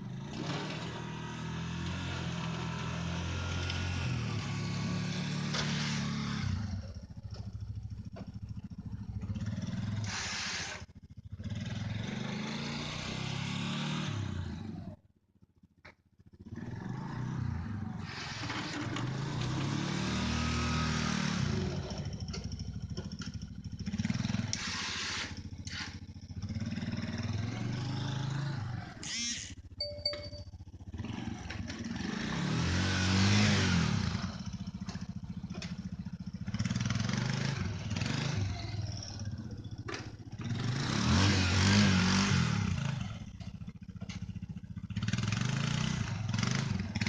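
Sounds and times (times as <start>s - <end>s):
atv engine revving: 0.0s - 15.0s, 16.3s - 30.0s, 30.6s - 47.0s.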